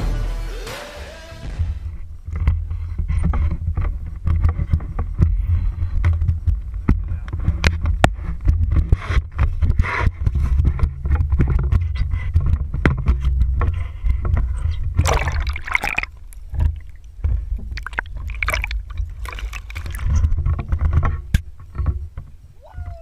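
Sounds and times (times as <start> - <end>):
knocks and scrapes: 2.0 - 22.4
water splashing: 15.0 - 20.3.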